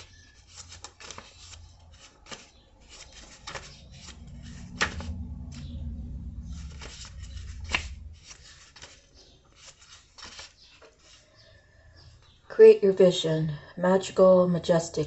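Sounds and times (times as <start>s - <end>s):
cards and paper rustling: 0.0s - 11.5s
low rumble: 3.2s - 8.9s.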